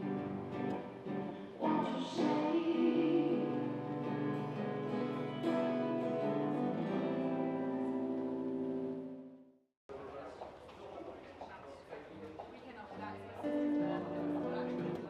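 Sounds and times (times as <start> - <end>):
guitar music: 0.0 - 9.6, 13.2 - 15.0.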